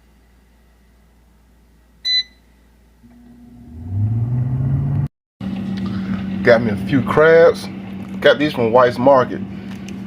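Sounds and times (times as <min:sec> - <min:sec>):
short electronic beep: 0:02.0 - 0:02.4
fan motor spinning up: 0:03.0 - 0:10.0.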